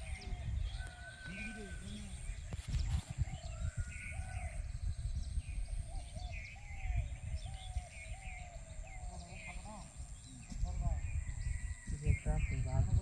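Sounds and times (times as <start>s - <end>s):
birds calling: 0.0s - 13.0s.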